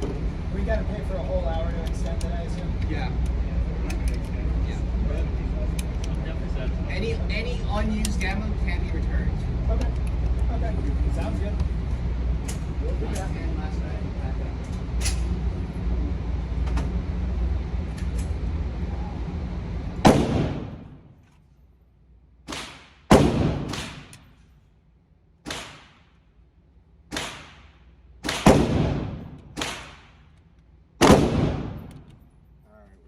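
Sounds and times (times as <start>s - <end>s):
low rumble: 0.0s - 21.2s, 26.2s - 32.5s
pistol shots echoing indoors: 20.1s - 21.0s, 22.5s - 24.3s, 25.4s - 26.2s, 27.1s - 30.4s, 31.0s - 32.0s.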